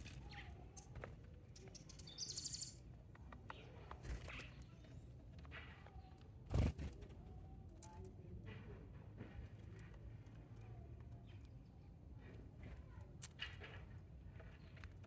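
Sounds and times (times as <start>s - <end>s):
small songbirds chirping: 0.0s - 5.2s.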